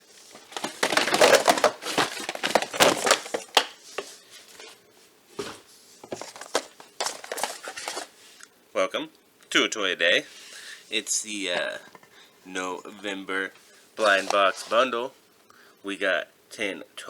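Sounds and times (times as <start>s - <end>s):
packaging crinkling and rustling: 0.0s - 4.8s, 5.4s - 8.2s
packaging clicks: 0.3s - 3.8s, 6.1s - 8.1s.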